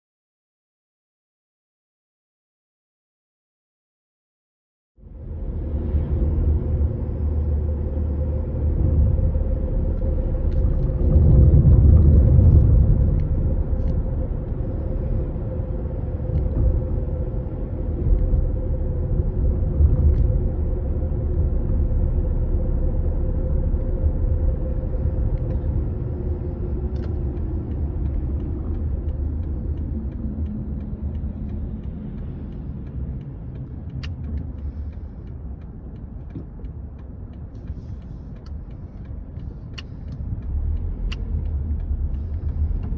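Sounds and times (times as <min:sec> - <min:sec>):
car engine rumbling: 0:05.0 - 0:42.9
faint clicks: 0:26.9 - 0:42.9.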